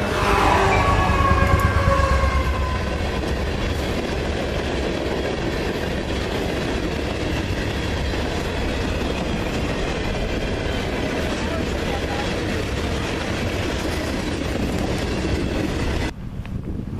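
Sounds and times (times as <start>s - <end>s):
train horn: 0.0s - 3.3s
train cars rumbling on track: 0.0s - 16.2s.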